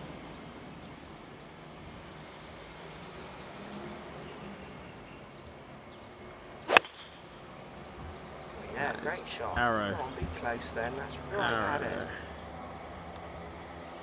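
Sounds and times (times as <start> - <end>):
rainforest hiss: 0.0 - 13.6
high wildlife chirps: 5.0 - 8.5.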